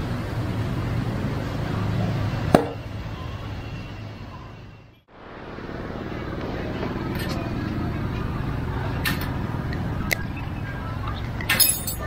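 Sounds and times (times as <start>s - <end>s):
workshop hum: 0.0s - 12.0s
sharp knock: 2.5s - 2.8s.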